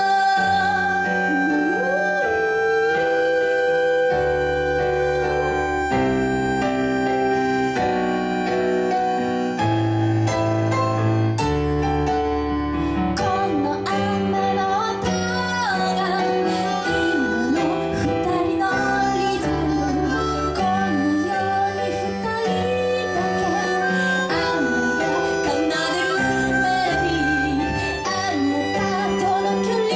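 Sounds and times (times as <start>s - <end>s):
piano chords: 0.0s - 29.9s
wavering lead melody: 0.0s - 29.9s.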